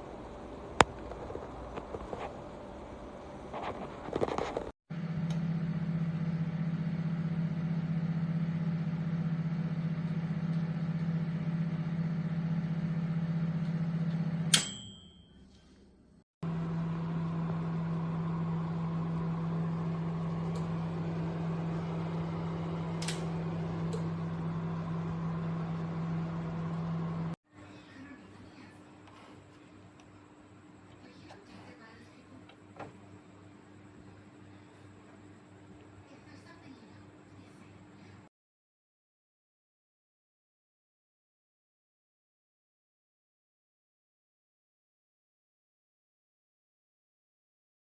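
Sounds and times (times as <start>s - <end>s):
microwave oven humming: 0.0s - 4.2s, 4.9s - 15.4s, 16.4s - 38.3s
microwave ding: 14.4s - 15.5s.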